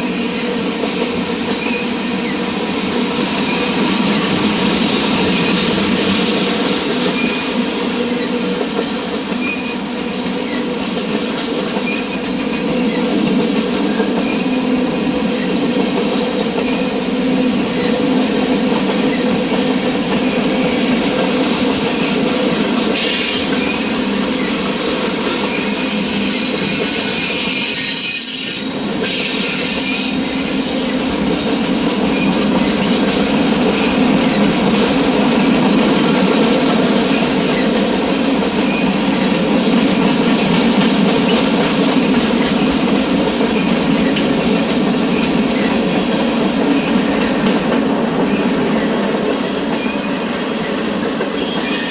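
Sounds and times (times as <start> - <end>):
train wheels rumbling on rails: 0.0 - 51.9
high-pitched wheel squeal: 25.5 - 32.8, 48.4 - 51.9.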